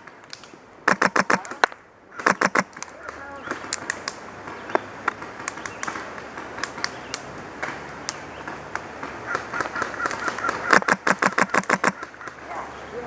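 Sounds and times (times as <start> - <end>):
airsoft gun shots: 0.9 - 2.7, 9.3 - 12.1.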